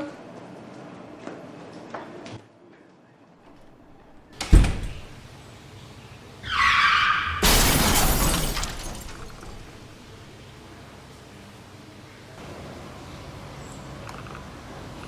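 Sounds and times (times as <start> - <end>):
car tyres squealing: 6.3 - 9.8
car crash with shattering glass: 6.4 - 10.3.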